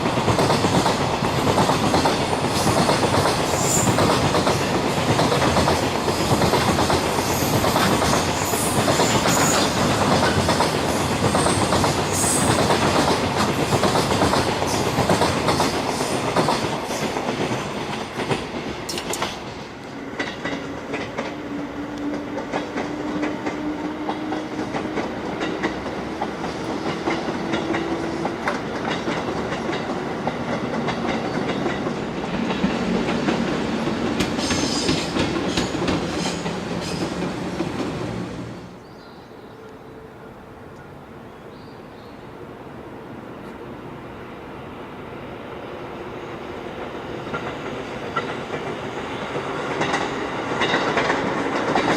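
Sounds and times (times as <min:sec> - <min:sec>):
train wheels clattering on rails: 0:00.0 - 0:38.4, 0:46.6 - 0:51.9
steady train hum: 0:00.0 - 0:51.9.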